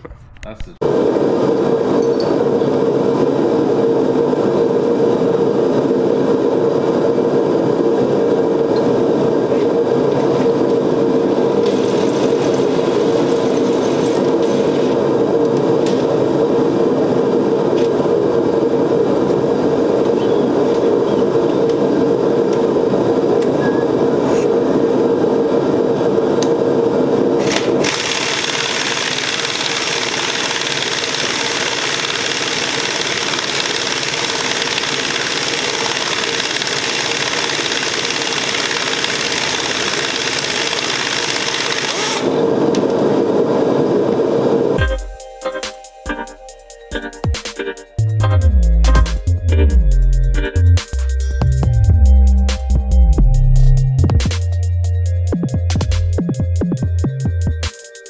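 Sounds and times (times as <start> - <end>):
shop machinery whirring: 0.8 - 46.0.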